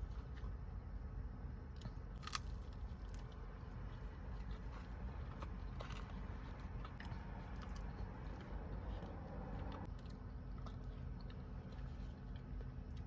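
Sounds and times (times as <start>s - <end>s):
person chewing food: 1.7s - 13.0s.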